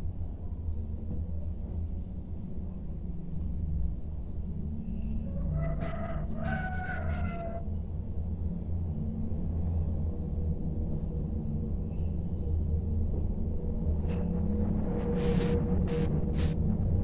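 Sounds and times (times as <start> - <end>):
steady low hum: 0.0 - 17.0
rooster crowing: 5.2 - 7.7.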